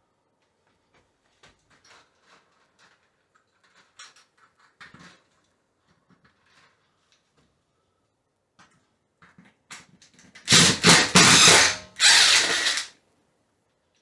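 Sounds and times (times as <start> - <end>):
power drill running: 10.5 - 12.9.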